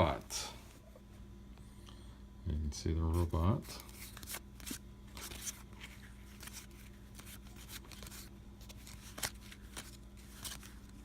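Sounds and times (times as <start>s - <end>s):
faint steady hum: 0.0s - 11.0s
cards clicking and rustling: 3.2s - 11.0s.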